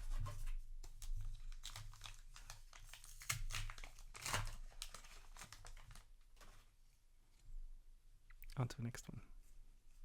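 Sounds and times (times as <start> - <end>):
foil wrapper crinkling: 1.2 - 6.5.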